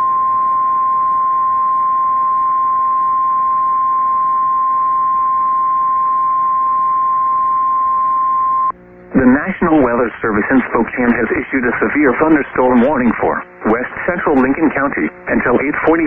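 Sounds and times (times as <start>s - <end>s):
steady warning alarm tone: 0.0s - 8.7s.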